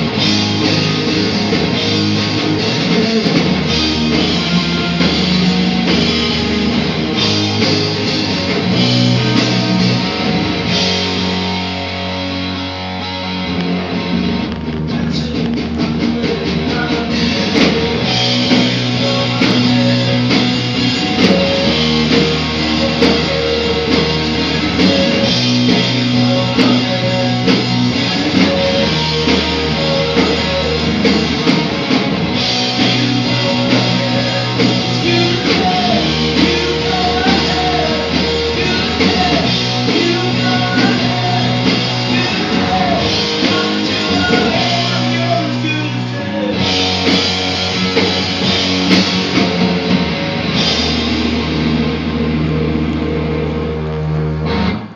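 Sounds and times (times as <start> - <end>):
amplified guitar: 0.0 - 54.9
drums: 0.0 - 54.9
person singing: 2.6 - 6.9, 7.6 - 10.4, 14.9 - 47.3.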